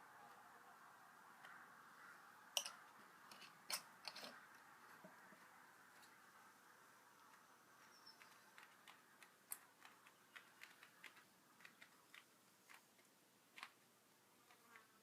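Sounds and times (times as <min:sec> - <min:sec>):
faint small clicks and ticks: 0:07.2 - 0:13.8.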